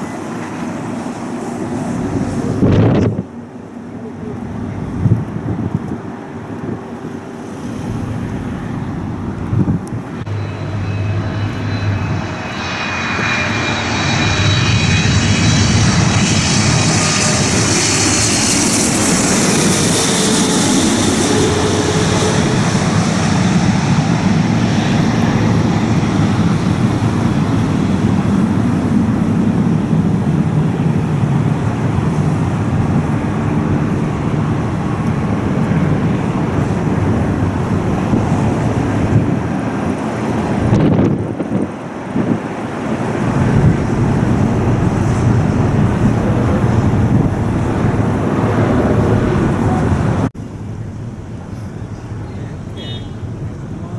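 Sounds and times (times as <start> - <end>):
high engine whine: 0.0 - 53.9
jet engines roaring: 0.0 - 53.9.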